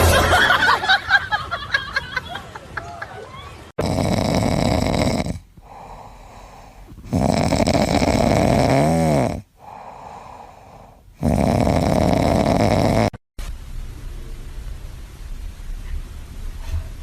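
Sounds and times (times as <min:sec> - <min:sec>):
pet snoring loudly: 0:03.8 - 0:13.2.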